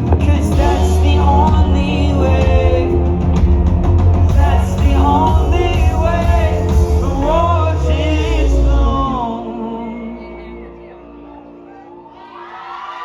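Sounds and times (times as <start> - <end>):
rock band playing: 0.0 - 9.2
person singing: 0.0 - 13.0.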